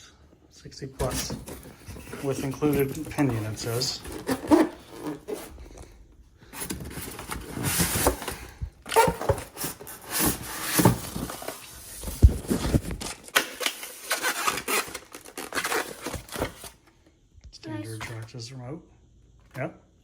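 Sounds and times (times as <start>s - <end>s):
cardboard rubbing and scraping: 1.0s - 5.8s, 6.6s - 13.2s.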